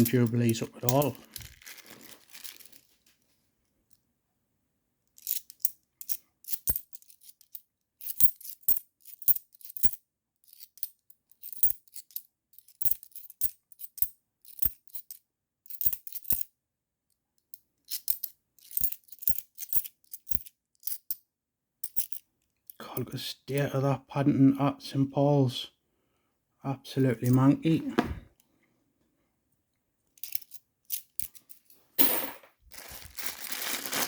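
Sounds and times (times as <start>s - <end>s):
coins clinking and sliding: 30.2s - 33.8s.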